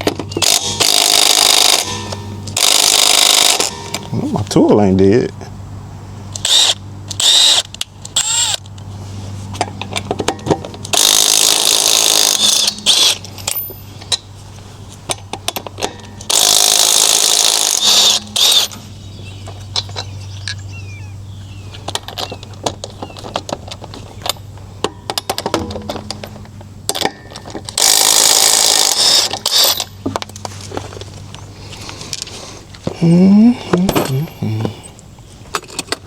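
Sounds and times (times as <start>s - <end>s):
impact wrench running: 0.4s - 4.1s, 10.9s - 13.6s, 16.3s - 18.8s, 27.7s - 30.0s.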